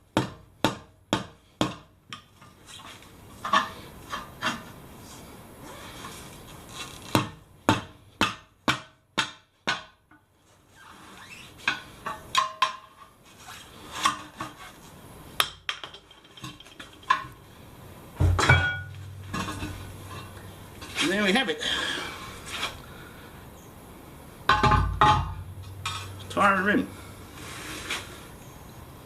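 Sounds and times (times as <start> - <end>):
heavy thud with low ringing: 18.2 - 20.6, 24.5 - 26.4
tyre levers knocking on steel rim: 24.5 - 26.2.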